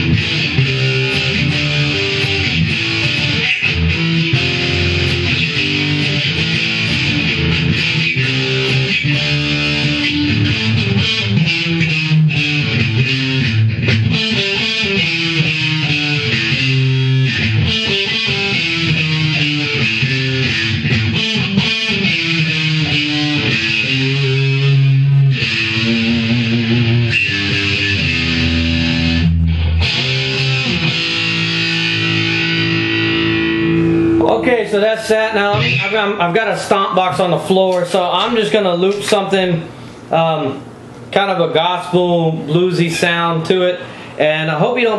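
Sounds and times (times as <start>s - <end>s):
distorted electric guitar riffs: 0.0s - 44.9s.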